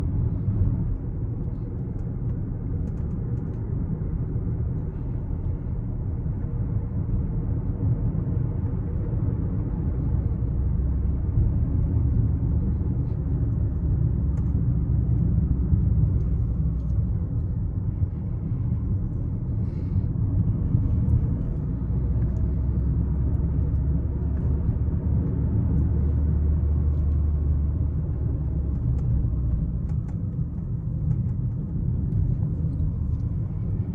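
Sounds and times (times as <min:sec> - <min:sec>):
car interior low rumble: 0:00.0 - 0:33.9
faint steering wheel clicks: 0:28.6 - 0:33.5.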